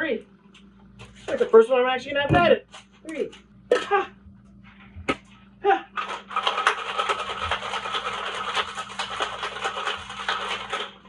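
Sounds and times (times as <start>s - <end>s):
ice rattling in cocktail shaker: 6.0s - 11.0s.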